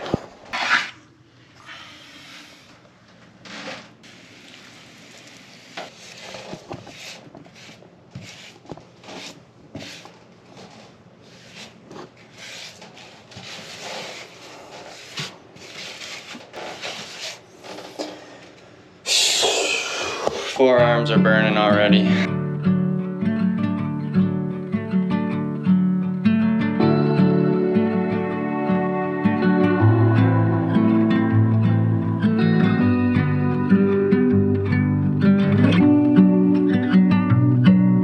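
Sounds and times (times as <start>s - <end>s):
grout scraping on tile: 0.0s - 1.0s, 3.5s - 18.2s.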